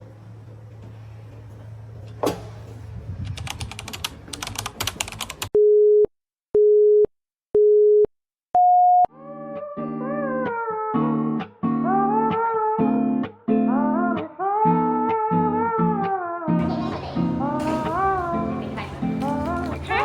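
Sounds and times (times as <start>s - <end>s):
music with plucked strings: 9.1s - 20.0s.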